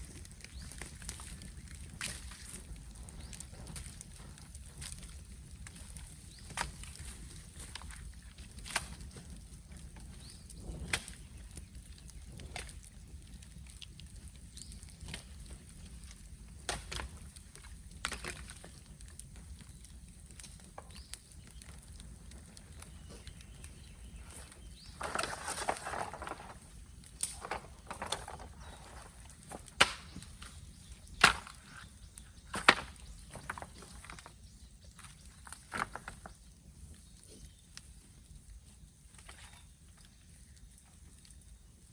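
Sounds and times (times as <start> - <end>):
bamboo crackling in a bonfire: 0.0 - 41.9
loud bamboo pops: 27.2 - 30.6, 31.2 - 31.8, 32.5 - 34.2.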